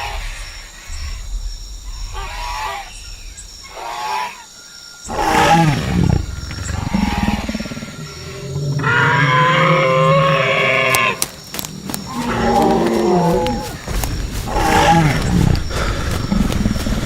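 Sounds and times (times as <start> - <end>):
loud low animal call: 11.8 - 16.5.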